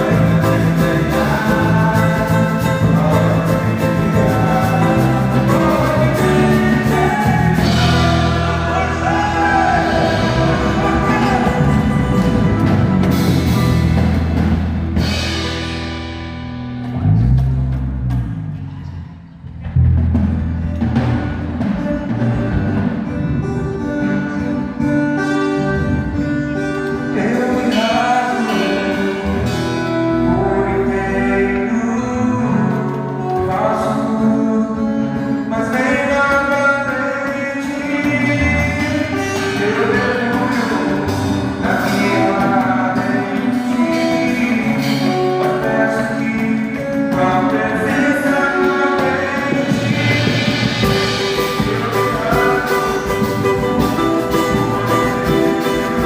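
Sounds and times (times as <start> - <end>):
worship music with gliding lead: 0.0 - 18.0, 20.3 - 56.0.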